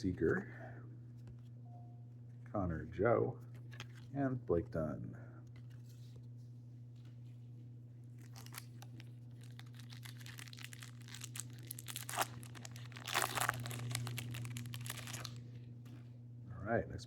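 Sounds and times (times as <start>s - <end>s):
plastic wrapper tearing and crinkling: 8.2s - 15.4s.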